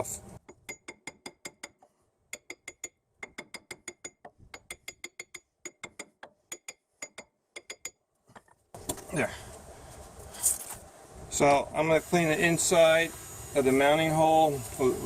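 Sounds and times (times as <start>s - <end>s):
hammer tapping metal hub: 0.4s - 8.0s.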